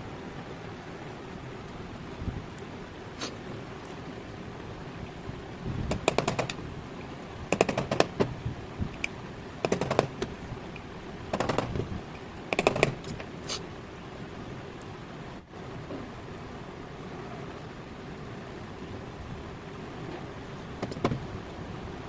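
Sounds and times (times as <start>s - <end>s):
small hard parts clicking: 5.9s - 6.6s, 7.5s - 13.4s, 20.8s - 21.2s.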